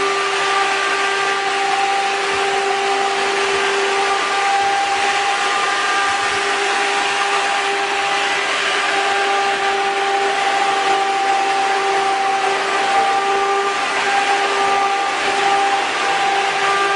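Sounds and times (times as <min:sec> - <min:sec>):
wind tunnel fan rushing air: 0:00.0 - 0:16.9.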